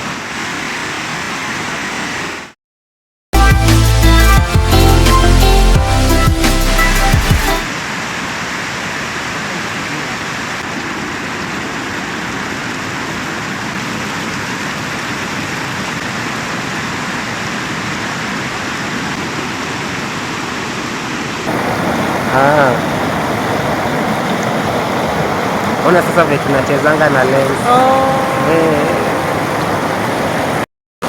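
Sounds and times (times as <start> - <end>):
running water rushing: 0.0 - 2.6, 21.4 - 30.7.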